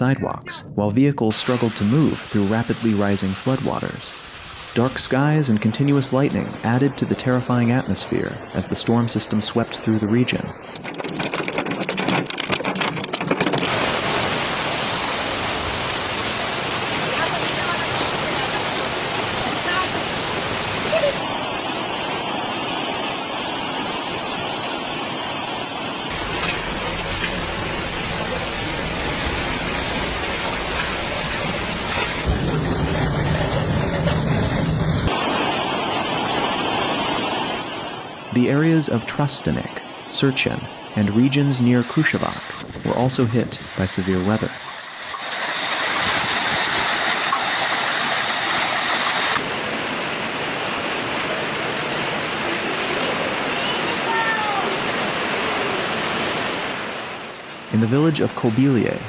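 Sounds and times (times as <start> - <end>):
heavy rain: 1.4 - 10.7, 13.6 - 21.2, 26.1 - 35.1, 41.8 - 57.7
running water: 1.4 - 10.8, 13.7 - 21.2, 26.1 - 35.1, 41.8 - 57.2.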